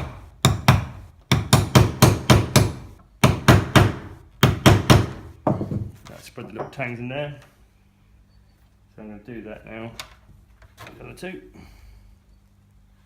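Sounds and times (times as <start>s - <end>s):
hammer striking chisel: 0.0s - 5.9s.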